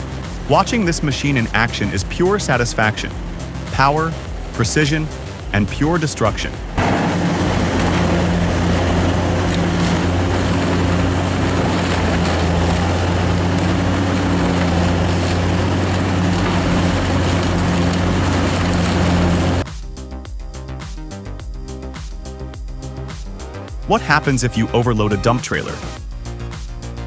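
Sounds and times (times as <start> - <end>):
diesel engine drone: 0.0 - 19.7
wood shredder grinding: 6.8 - 19.6.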